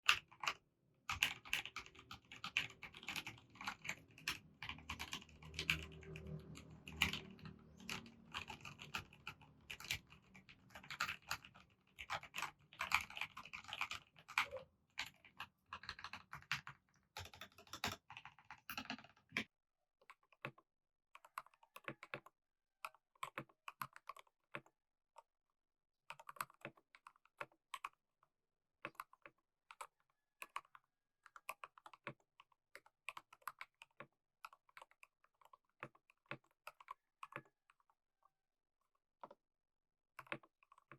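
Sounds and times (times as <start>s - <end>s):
mechanical keyboard typing: 0.1s - 19.1s.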